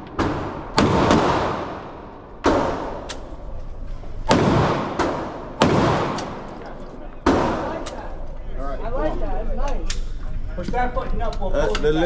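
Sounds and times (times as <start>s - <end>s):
loud gunshots with echo: 0.1s - 3.1s, 4.2s - 6.6s, 7.2s - 7.8s
faint gunshots: 0.2s - 3.1s, 4.2s - 6.5s.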